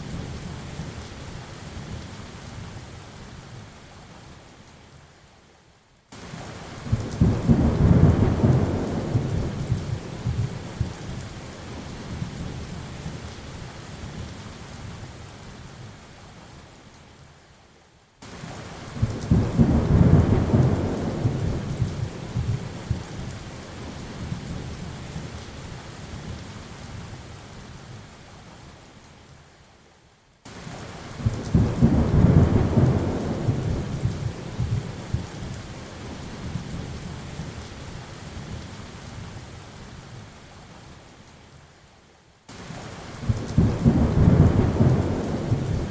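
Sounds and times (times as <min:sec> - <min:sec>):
steady rain: 0:00.0 - 0:45.9
rolling thunder: 0:43.2 - 0:45.9.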